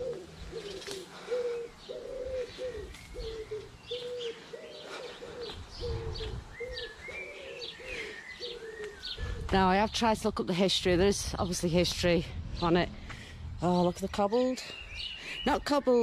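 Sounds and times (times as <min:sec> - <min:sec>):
pigeon cooing: 0:00.0 - 0:09.5
small birds chirping: 0:00.0 - 0:16.0.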